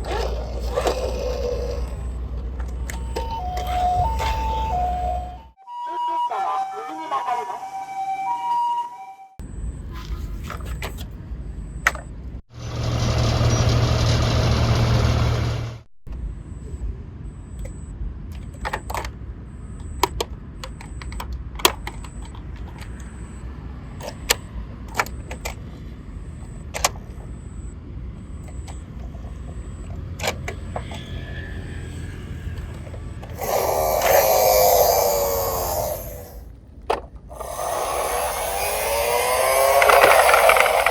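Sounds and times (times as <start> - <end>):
noisy rush of toy vehicle: 0.0 - 5.2, 28.5 - 36.5, 37.3 - 40.9
toy vehicle low rumble: 0.0 - 5.6, 12.6 - 40.9
plastic clicks and knocks: 36.8 - 37.3.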